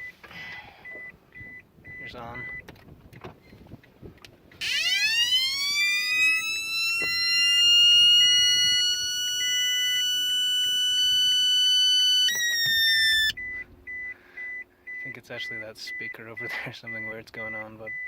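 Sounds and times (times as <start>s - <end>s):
electronic siren-like whine: 4.6s - 13.5s.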